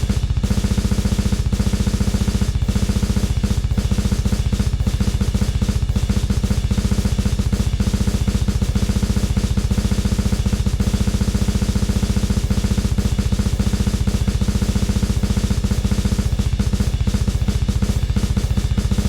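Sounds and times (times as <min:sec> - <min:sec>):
low droning bass: 0:00.0 - 0:10.9
machine-like drum pulse: 0:00.0 - 0:19.0.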